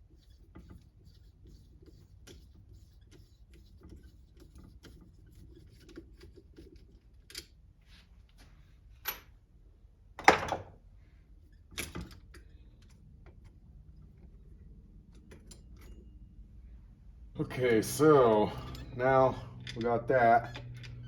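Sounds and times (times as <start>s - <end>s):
metal parts clicking and clattering: 18.2s - 21.0s.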